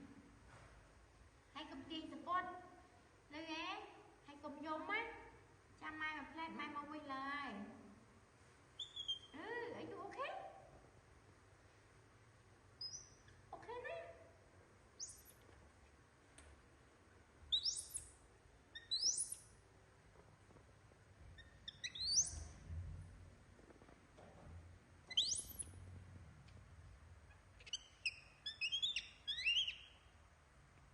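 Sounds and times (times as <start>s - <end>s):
bird chirping: 8.8s - 9.4s, 12.8s - 13.4s, 15.0s - 15.5s, 17.5s - 19.6s, 21.3s - 22.6s, 25.1s - 25.8s, 27.3s - 30.2s.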